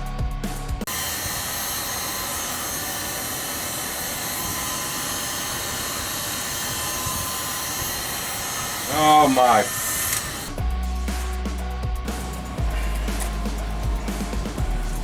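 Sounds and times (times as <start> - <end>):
background music: 0.0 - 0.9, 10.5 - 15.0.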